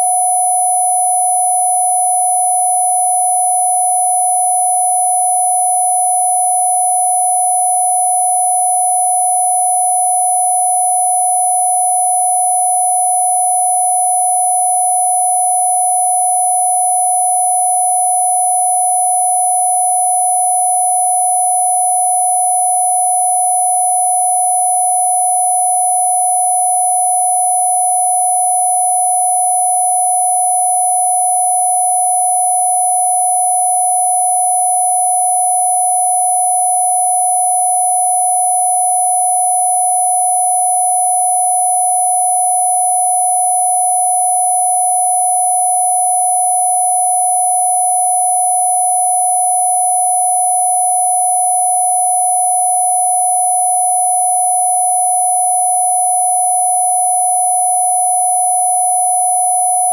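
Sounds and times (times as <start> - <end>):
synthesized sine tone: 0.0 - 0.9.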